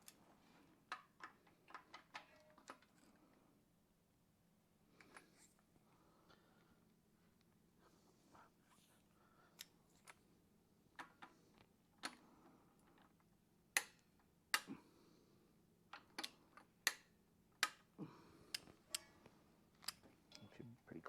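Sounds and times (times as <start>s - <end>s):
tools clicking and tapping: 0.9s - 3.0s, 13.8s - 14.8s, 15.9s - 17.9s.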